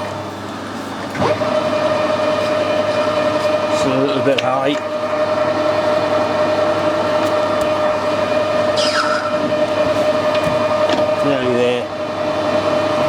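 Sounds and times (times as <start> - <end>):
metal lathe whining: 1.2 - 13.0
falling squeal: 8.7 - 9.6.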